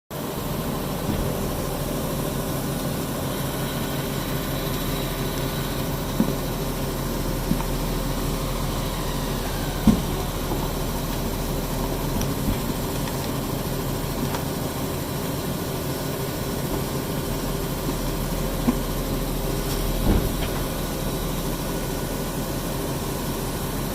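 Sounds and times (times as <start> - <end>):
washing machine hum: 0.1 - 23.9
thumps from tumbling load: 0.8 - 2.2, 17.8 - 20.9.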